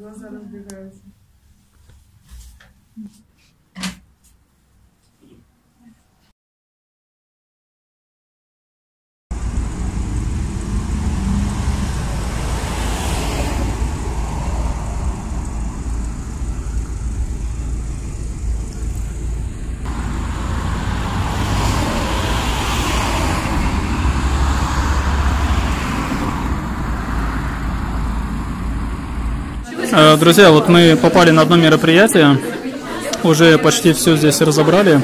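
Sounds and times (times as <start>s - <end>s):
passing cars rumbling: 9.3s - 35.0s.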